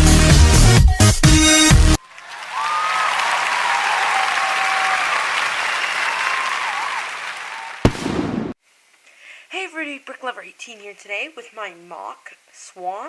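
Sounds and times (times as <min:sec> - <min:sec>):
crowd applause: 0:02.0 - 0:07.9.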